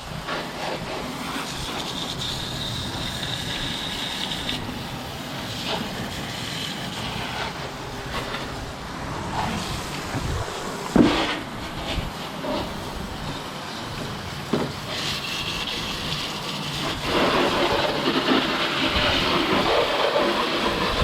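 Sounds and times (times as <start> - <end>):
water spraying: 0.0 - 21.0.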